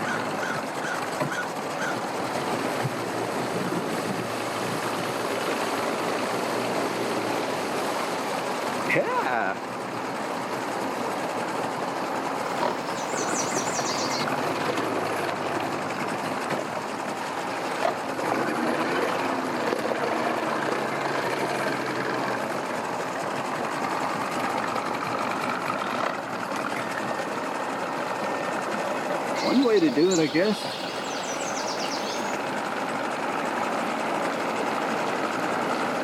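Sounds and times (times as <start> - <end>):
boat engines idling: 12.4 - 14.3, 29.3 - 32.4
high chirps: 12.5 - 14.3, 29.4 - 32.4.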